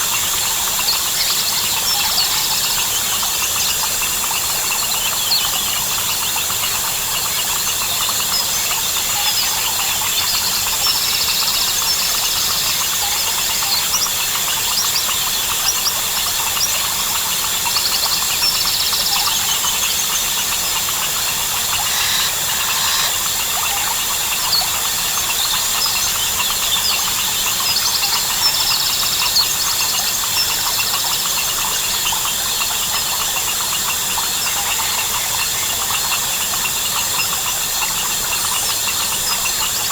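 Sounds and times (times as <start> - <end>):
insect trilling: 18.2 - 28.4
fast pulsed trills: 19.0 - 25.9
short chirps and calls: 21.3 - 23.9.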